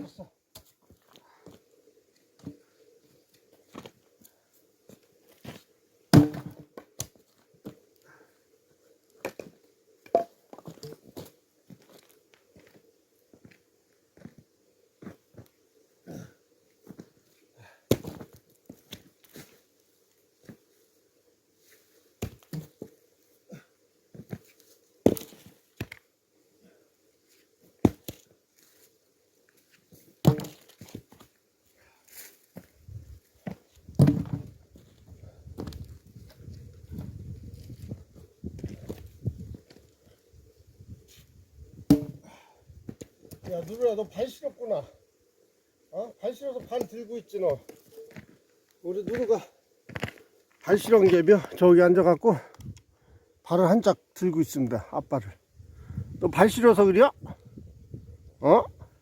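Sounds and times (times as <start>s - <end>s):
axe chopping firewood: 6.1s - 6.6s, 17.9s - 18.2s, 25.0s - 25.9s, 27.8s - 28.2s, 30.2s - 30.8s, 34.0s - 34.5s, 41.9s - 42.3s
firewood knocks and thuds: 6.1s - 7.1s, 17.9s - 18.3s, 30.2s - 31.3s, 33.4s - 34.9s, 41.9s - 42.3s.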